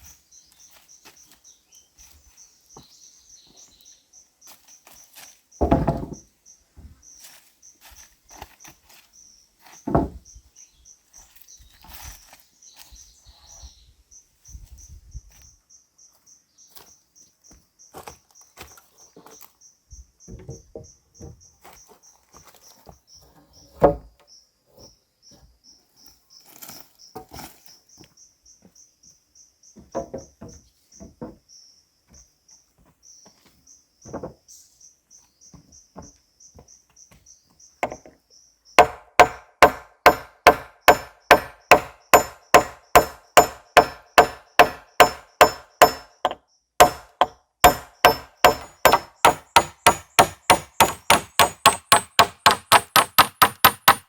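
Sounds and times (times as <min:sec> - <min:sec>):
insect chirping: 0:00.0 - 0:54.0
knocks on wood: 0:05.6 - 0:06.2, 0:09.9 - 0:10.2, 0:29.8 - 0:31.4, 0:37.8 - 0:38.1, 0:38.8 - 0:54.0
tool strikes on wood: 0:05.6 - 0:06.2, 0:09.9 - 0:10.2, 0:37.8 - 0:38.2, 0:38.8 - 0:54.0.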